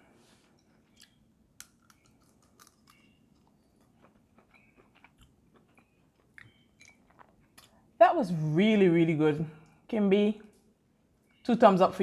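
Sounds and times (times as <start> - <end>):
mouth chewing clicks and smacks: 0.9 - 7.8.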